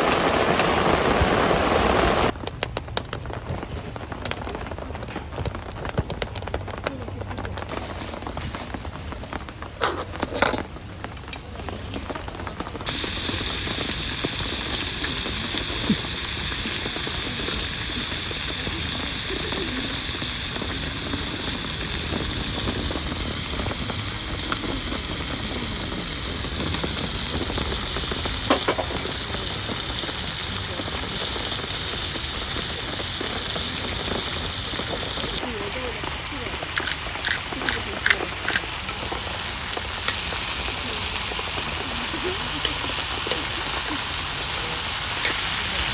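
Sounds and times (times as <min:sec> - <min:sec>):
food sizzling in a frying pan: 0:00.0 - 0:02.4, 0:12.8 - 0:45.9
small pops of frying food: 0:02.3 - 0:10.4, 0:11.0 - 0:45.9.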